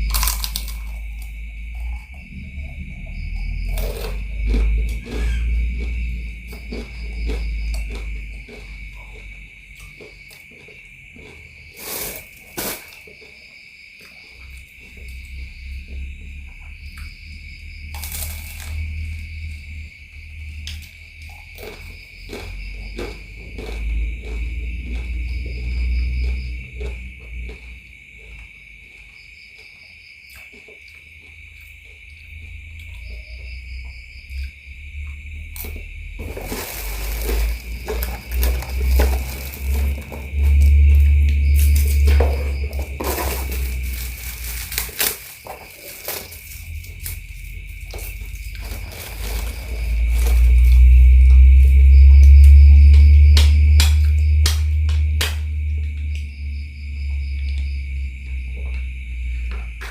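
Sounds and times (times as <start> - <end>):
low rumble: 0.0 - 9.9, 14.8 - 21.4, 32.4 - 45.1, 46.4 - 59.9
crickets chirring: 0.0 - 59.9
higher insect trill: 0.0 - 59.9
noisy rustles: 36.1 - 52.9.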